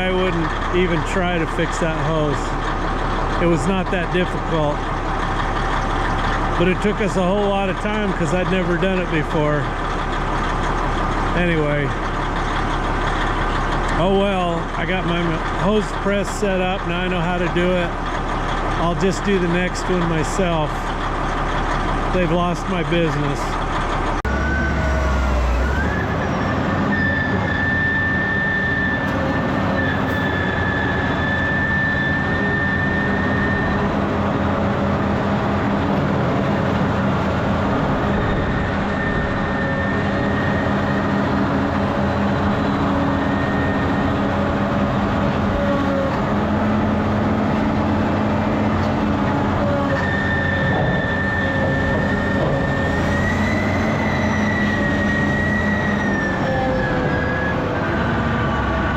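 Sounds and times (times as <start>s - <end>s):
diesel earthmoving machine rumbling: 0.0s - 58.9s
high machine whine: 24.2s - 27.6s.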